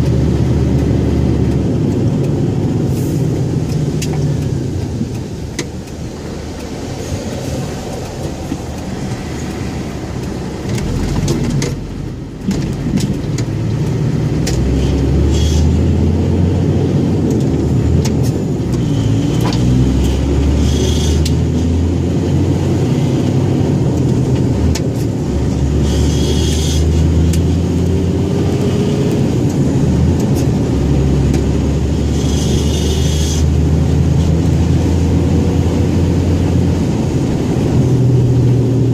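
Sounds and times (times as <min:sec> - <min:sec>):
diesel truck engine running: 0:00.0 - 0:38.9.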